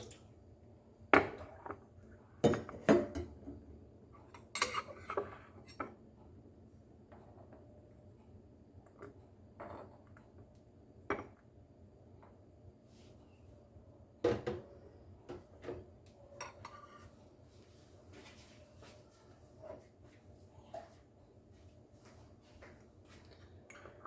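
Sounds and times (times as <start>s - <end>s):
dishes and cutlery clinking: 4.3s - 5.9s, 16.3s - 17.1s.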